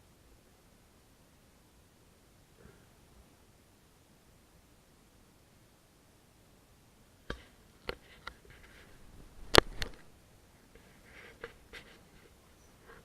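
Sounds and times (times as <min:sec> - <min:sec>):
faint rustling: 0:07.2 - 0:13.0
sharp clicks and knocks: 0:09.5 - 0:10.1.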